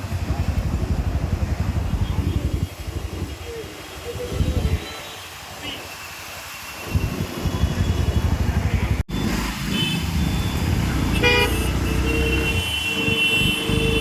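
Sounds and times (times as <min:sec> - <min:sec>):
road traffic rumble: 0:00.0 - 0:14.0
vehicle horn honking: 0:11.1 - 0:14.0.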